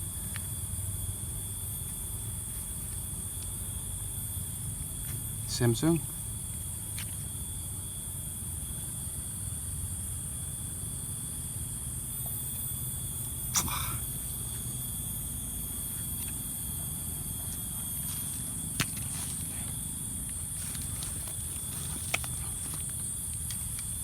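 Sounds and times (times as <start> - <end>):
crickets chirring: 0.0 - 24.0.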